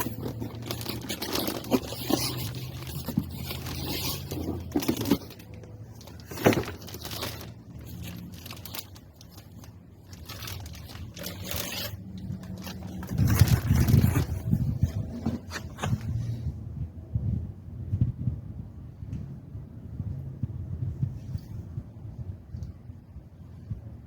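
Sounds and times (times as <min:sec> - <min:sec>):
packaging scraping and crinkling: 0:00.0 - 0:16.3.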